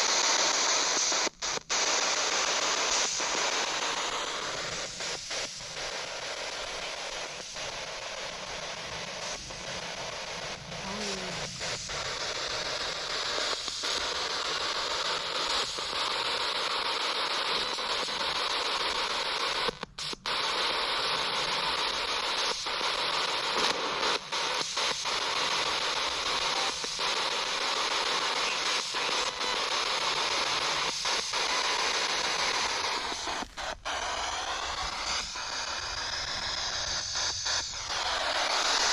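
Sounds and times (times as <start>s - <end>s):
radio static sweeping: 8.3s - 13.1s, 23.5s - 38.9s.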